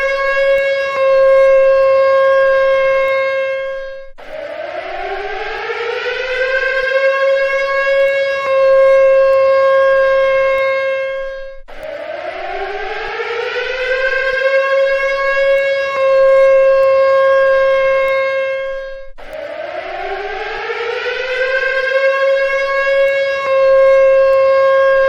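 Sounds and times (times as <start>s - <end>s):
civil defense siren winding up: 0.0s - 25.0s.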